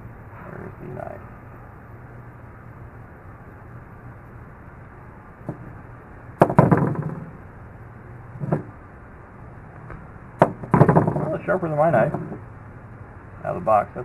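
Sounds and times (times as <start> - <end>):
low hum: 0.0 - 14.0
dull knock: 6.4 - 7.3.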